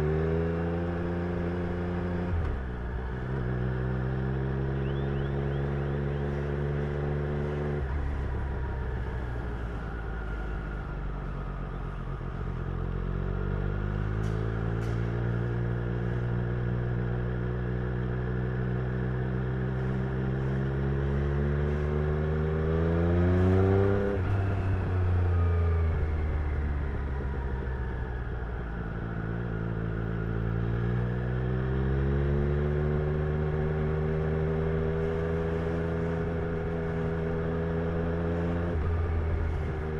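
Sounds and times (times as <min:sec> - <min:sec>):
motorcycle engine revving: 0:18.4 - 0:24.9.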